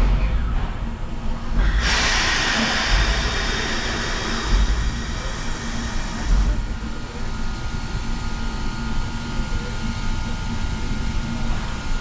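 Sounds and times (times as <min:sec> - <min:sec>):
steam locomotive exhaust beats: 0:00.0 - 0:12.0
steam hiss: 0:01.6 - 0:07.1.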